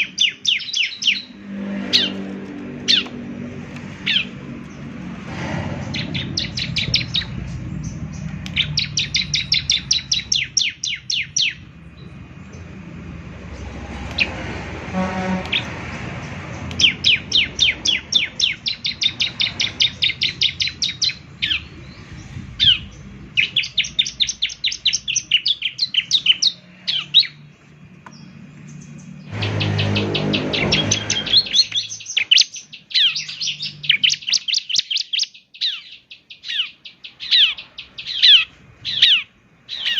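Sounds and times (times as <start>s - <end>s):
bird rattling trills: 0.0s - 5.1s, 5.7s - 11.7s, 15.5s - 21.7s, 29.3s - 39.2s.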